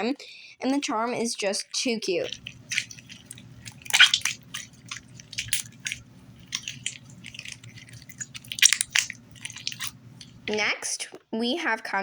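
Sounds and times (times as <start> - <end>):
hands squishing slime: 2.2 - 10.7.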